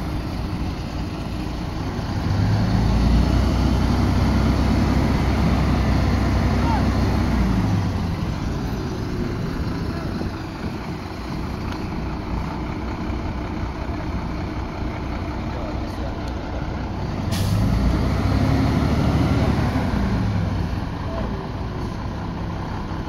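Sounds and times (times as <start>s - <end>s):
diesel truck engine running: 0.0s - 23.0s.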